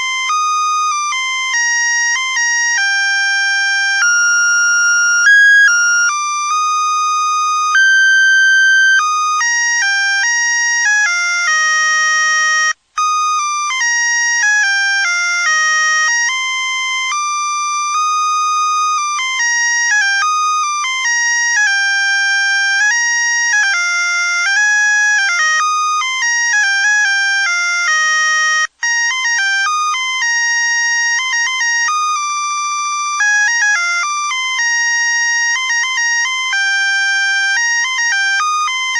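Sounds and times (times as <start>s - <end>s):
electronic beeping melody: 2.9s - 10.2s.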